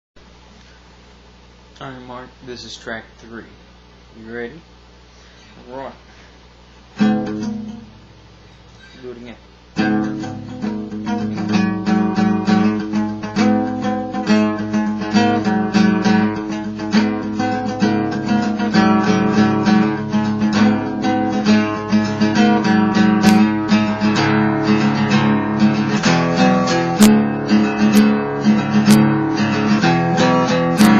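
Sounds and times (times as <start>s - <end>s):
acoustic guitar strumming: 6.9s - 9.0s, 9.7s - 30.9s.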